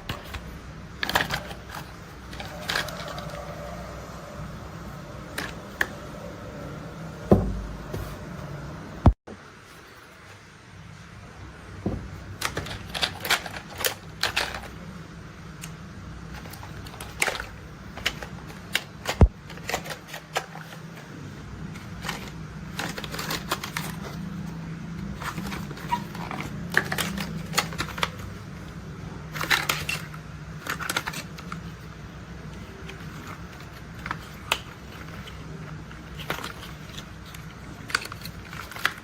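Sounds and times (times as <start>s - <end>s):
plastic toys clicking and rattling: 0.0s - 4.0s, 12.3s - 14.9s, 16.3s - 21.0s, 21.7s - 39.0s.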